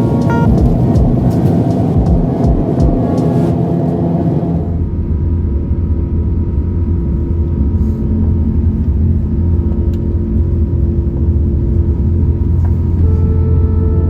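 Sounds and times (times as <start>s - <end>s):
steady tones: 0.0s - 4.8s
airliner engine rumble in cabin: 0.0s - 14.0s.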